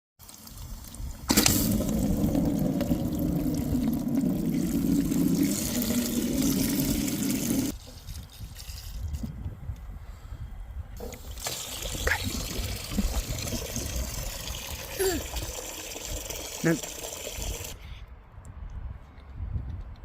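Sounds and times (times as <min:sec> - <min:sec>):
water pouring: 0:00.2 - 0:09.2, 0:11.0 - 0:17.8.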